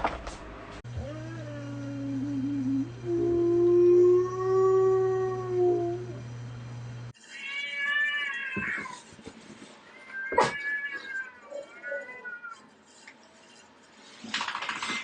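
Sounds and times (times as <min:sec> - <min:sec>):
steady hum: 0:00.4 - 0:07.1.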